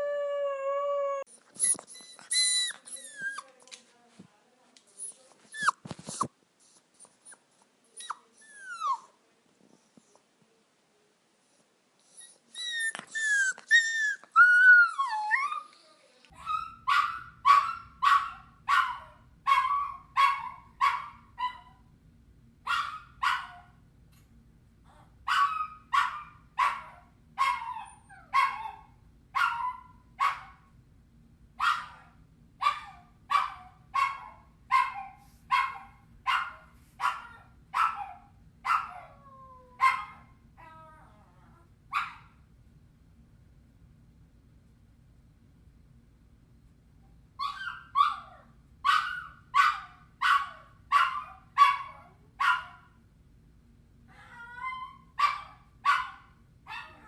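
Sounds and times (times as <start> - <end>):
puppy whining and yelping: 0.0 - 3.5, 5.0 - 6.3, 8.0 - 9.1, 12.0 - 16.9
faint low hum: 0.0 - 57.0.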